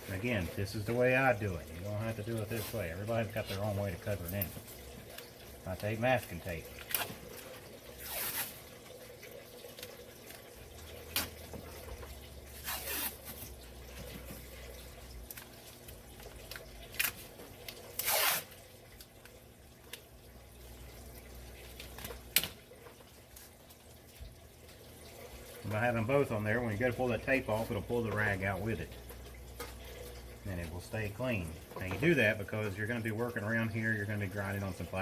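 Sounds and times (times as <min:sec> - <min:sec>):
tape ripping off roll: 0:08.0 - 0:08.6, 0:12.6 - 0:13.4, 0:17.9 - 0:18.6.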